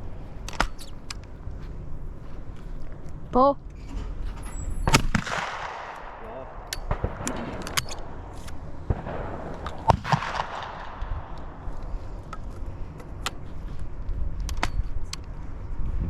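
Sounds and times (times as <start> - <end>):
gun handling clicks: 0.0 - 1.5
shotgun shots: 4.4 - 11.8.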